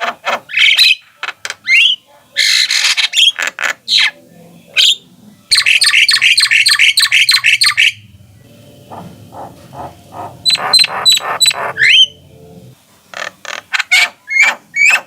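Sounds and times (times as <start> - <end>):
bird chattering and whistling: 4.8 - 8.0, 8.9 - 12.7.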